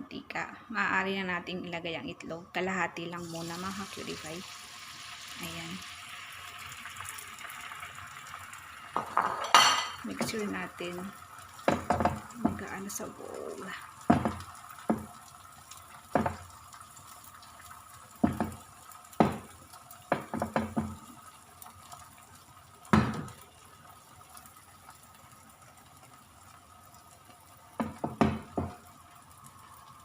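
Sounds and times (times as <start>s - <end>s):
egg frying in hot oil: 3.1s - 30.0s
utensil knocking against pan: 11.7s - 12.6s, 14.1s - 15.1s, 16.2s - 16.4s, 18.2s - 18.6s, 20.1s - 21.0s, 27.8s - 28.8s.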